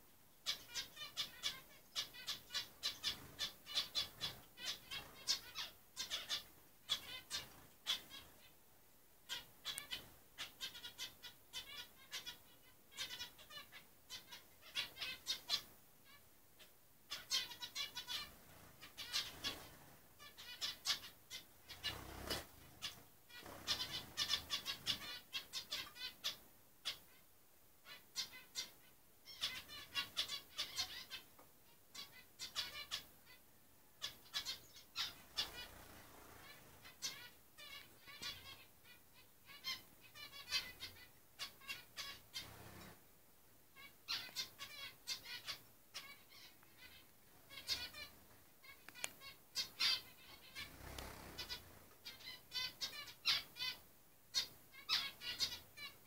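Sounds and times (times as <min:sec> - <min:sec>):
caged birds chirping and squawking: 0:00.4 - 0:08.6, 0:09.2 - 0:33.4, 0:34.0 - 0:56.0
wing flutters: 0:21.7 - 0:25.0, 0:35.2 - 0:37.0, 0:50.6 - 0:51.9.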